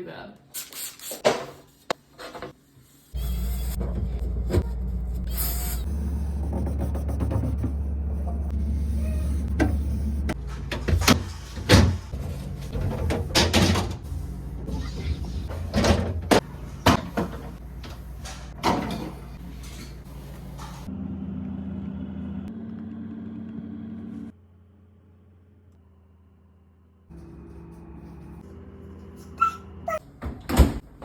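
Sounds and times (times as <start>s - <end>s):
low hum: 3.2s - 10.6s.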